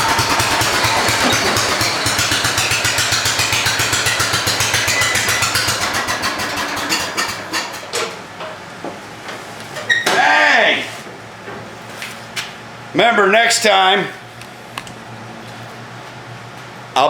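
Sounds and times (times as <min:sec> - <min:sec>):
garden tractor engine running: 0:00.0 - 0:07.9.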